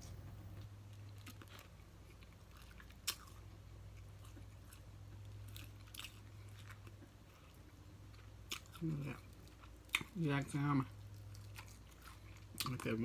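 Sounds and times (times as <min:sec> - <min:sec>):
low steady hum: 0:00.0 - 0:13.0
person chewing fried fish: 0:00.8 - 0:13.0
crisp clicks of breading: 0:08.3 - 0:13.0.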